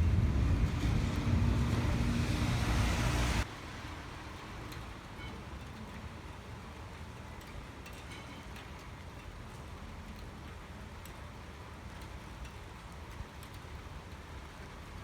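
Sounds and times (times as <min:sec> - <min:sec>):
low thunder rumble: 0:00.0 - 0:03.4
rain falling steadily: 0:00.0 - 0:15.0.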